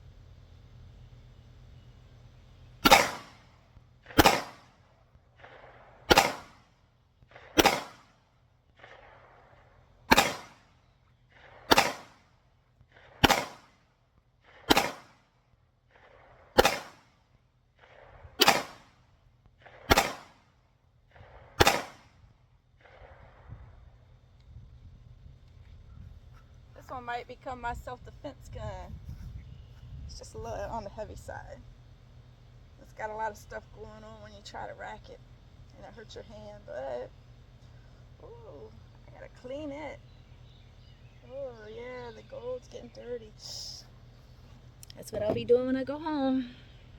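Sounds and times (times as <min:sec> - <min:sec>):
pistol shots: 0:02.8 - 0:04.8, 0:05.4 - 0:06.7, 0:07.3 - 0:08.2, 0:08.8 - 0:12.3, 0:12.9 - 0:13.8, 0:14.4 - 0:15.3, 0:15.9 - 0:17.2, 0:17.8 - 0:19.0, 0:19.6 - 0:22.2.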